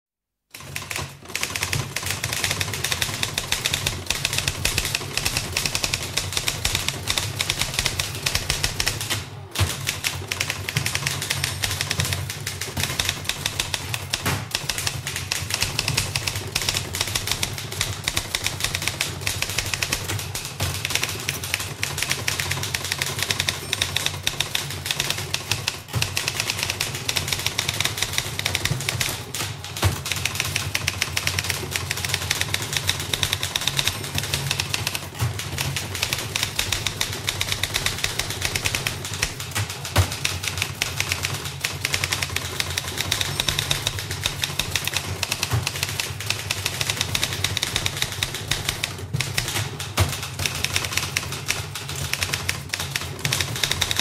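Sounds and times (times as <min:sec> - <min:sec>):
manual typewriters typing: 0:00.5 - 0:54.0.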